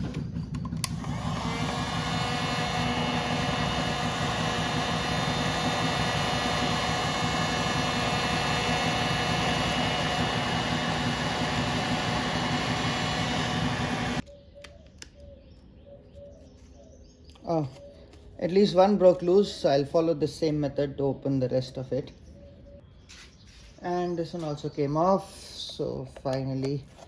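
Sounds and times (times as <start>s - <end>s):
heat gun switch click: 0.8s - 2.0s
heat gun hissing and whining: 0.8s - 14.3s.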